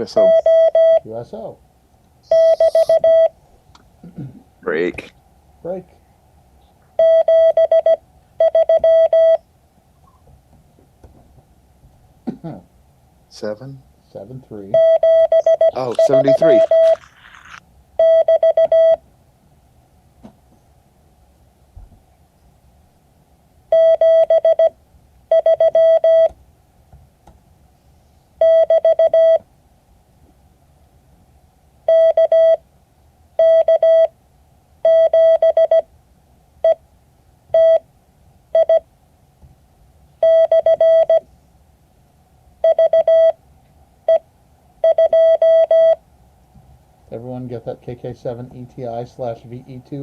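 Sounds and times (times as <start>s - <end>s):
morse code beeping: 0.0s - 1.0s, 2.3s - 3.3s, 7.0s - 9.4s, 14.8s - 19.0s, 44.8s - 46.0s.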